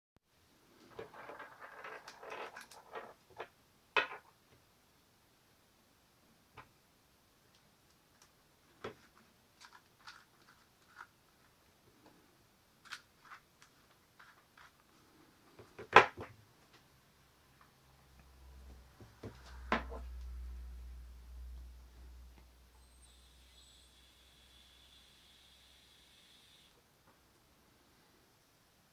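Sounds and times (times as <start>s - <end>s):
small objects clicking and knocking: 0.9s - 4.4s, 7.5s - 11.2s
low steady hum: 16.9s - 28.9s.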